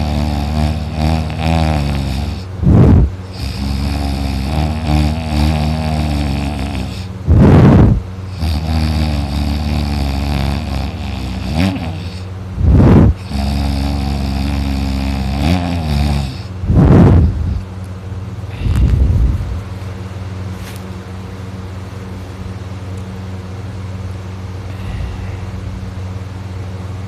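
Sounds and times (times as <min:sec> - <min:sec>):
man snoring loudly: 0:00.0 - 0:17.6.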